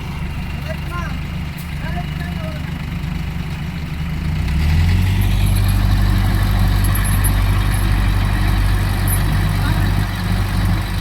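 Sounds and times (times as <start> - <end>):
heavy machinery diesel engine running: 0.0 - 11.0.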